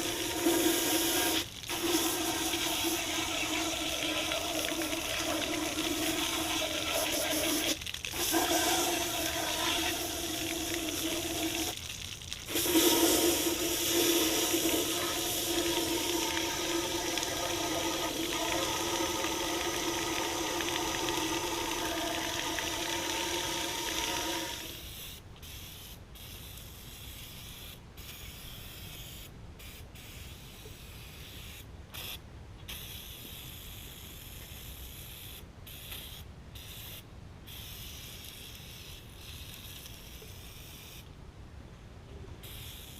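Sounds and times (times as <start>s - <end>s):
water spraying with hum: 0.0s - 24.8s
water splashing and dripping: 1.2s - 24.6s.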